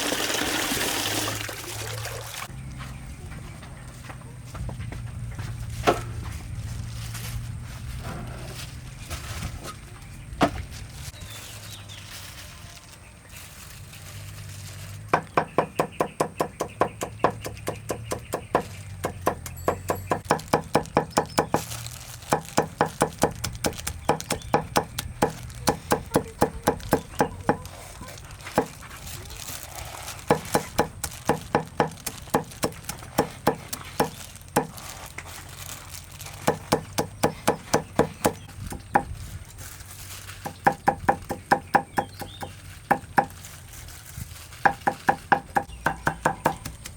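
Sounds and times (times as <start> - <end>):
knife chopping on wooden board: 30.3 - 34.7, 36.4 - 39.1, 40.5 - 43.3, 44.7 - 46.9.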